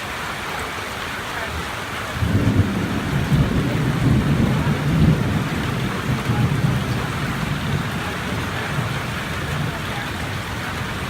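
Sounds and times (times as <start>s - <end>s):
heavy rain falling: 0.0s - 11.0s
rolling thunder: 2.2s - 11.0s.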